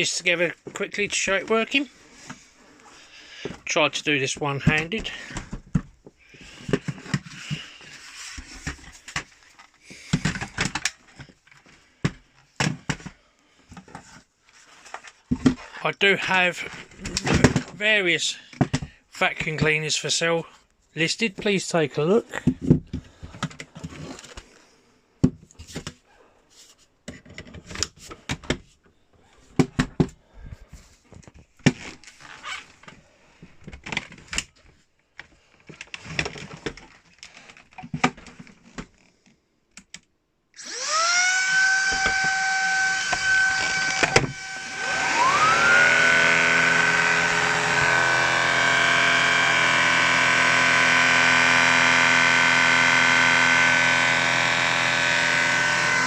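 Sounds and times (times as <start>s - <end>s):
vacuum motor whining: 40.6s - 56.0s.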